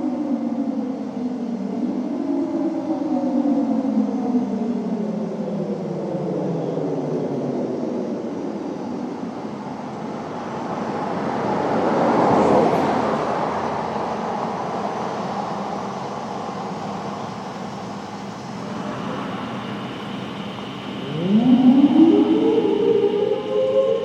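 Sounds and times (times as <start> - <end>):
distant siren: 16.2 - 24.0.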